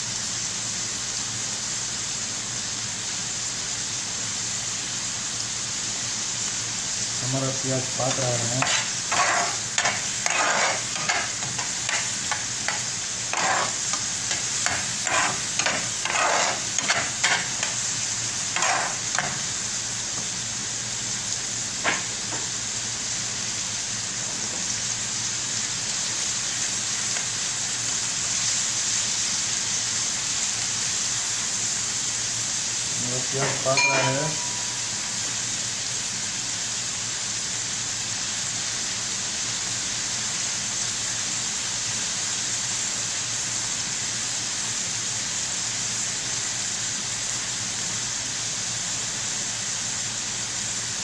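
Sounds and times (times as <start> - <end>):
onions sizzling in oil: 0.0 - 51.0
stirring scraping strokes: 8.1 - 17.8, 18.5 - 19.4.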